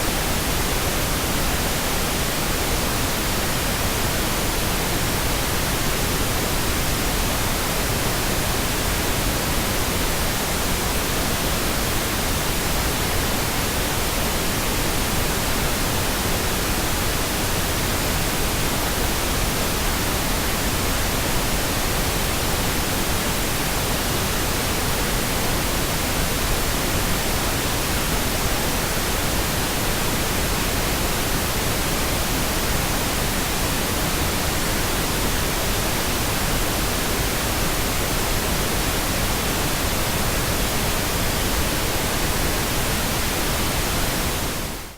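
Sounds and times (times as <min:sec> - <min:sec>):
pink noise hiss: 0:00.0 - 0:44.9.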